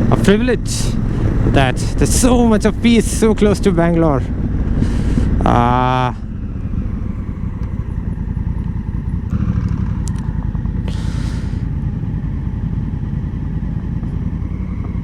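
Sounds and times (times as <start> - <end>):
motorcycle engine running: 0.0 - 15.0
sharp clicks: 8.6 - 10.8.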